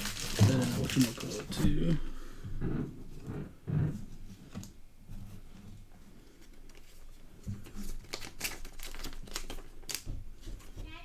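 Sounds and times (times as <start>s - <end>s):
cards being flipped through: 0.0s - 1.7s, 7.7s - 10.0s.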